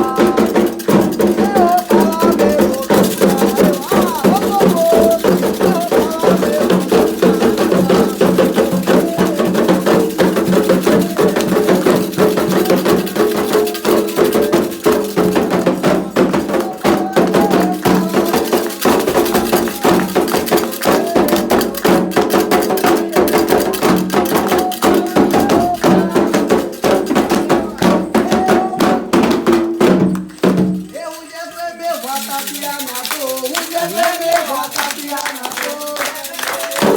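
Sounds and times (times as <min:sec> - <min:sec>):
hand drums and percussion: 0:00.0 - 0:36.9
group chanting: 0:01.4 - 0:11.9, 0:13.4 - 0:29.3, 0:32.0 - 0:36.9.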